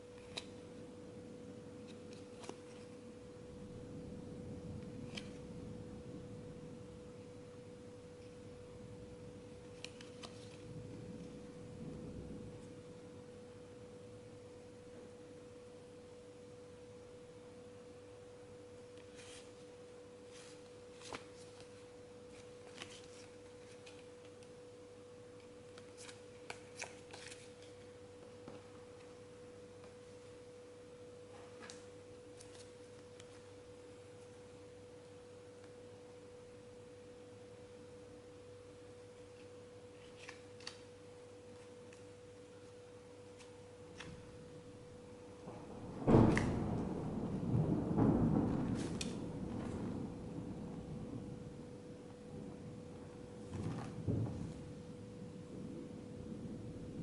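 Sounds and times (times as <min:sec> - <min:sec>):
faint electrical whine: 0:00.0 - 0:57.0.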